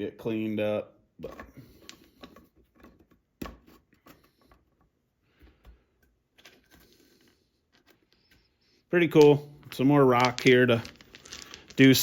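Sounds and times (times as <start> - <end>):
small rocks clicking and tapping: 9.1 - 12.0.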